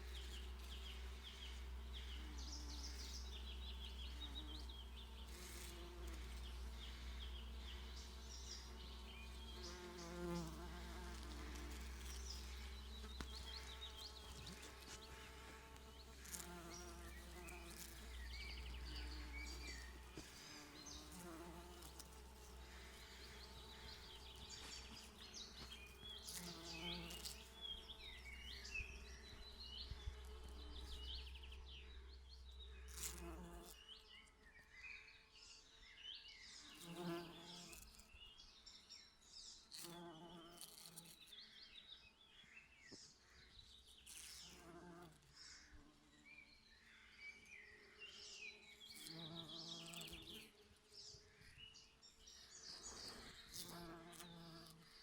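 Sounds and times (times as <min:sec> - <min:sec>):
bees buzzing: 0:00.0 - 0:31.5.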